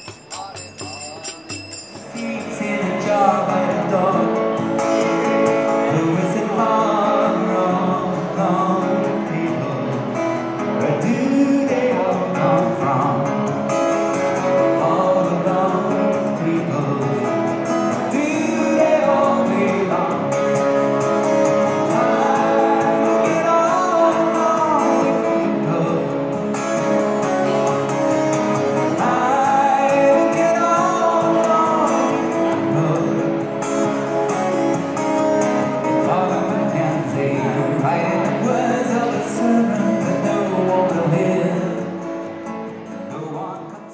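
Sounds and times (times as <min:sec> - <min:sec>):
instrumental accompaniment: 0:00.0 - 0:05.9
person singing: 0:00.0 - 0:13.3, 0:14.4 - 0:26.4, 0:28.7 - 0:33.5.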